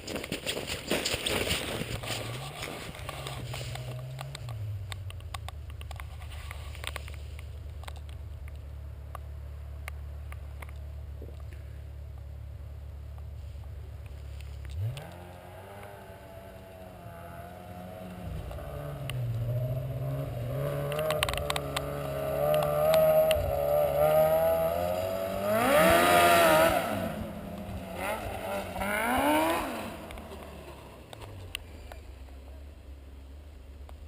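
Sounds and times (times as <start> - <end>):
snowmobile engine revving: 1.3 - 4.8, 14.6 - 31.2.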